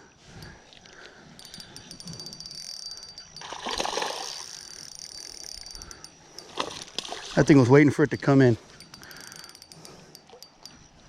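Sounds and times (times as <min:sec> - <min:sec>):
fishing reel ticking: 0:00.3 - 0:11.0
fish splashing: 0:03.4 - 0:05.6.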